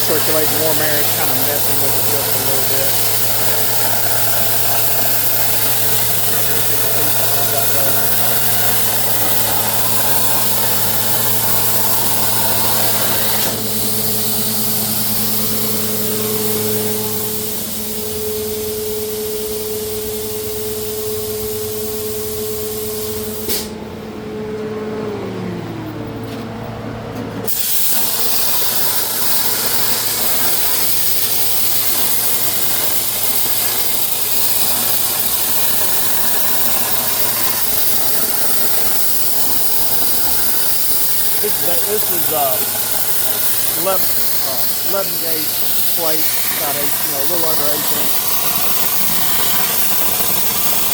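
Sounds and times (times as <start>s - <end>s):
plasma cutter arc hissing: 0.0s - 23.8s, 27.5s - 50.9s
machine hum: 0.0s - 50.9s
arc cutting off with a click: 4.6s - 13.8s, 23.3s - 23.8s.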